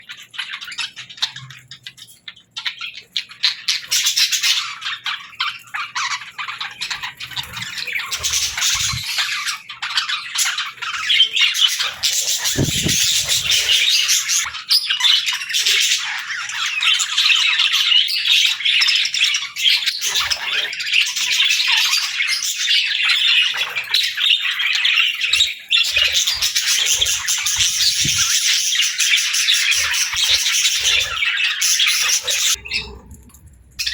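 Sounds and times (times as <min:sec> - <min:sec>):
budgerigars chattering and chirping: 0:00.0 - 0:33.9
low thumps: 0:12.5 - 0:13.6.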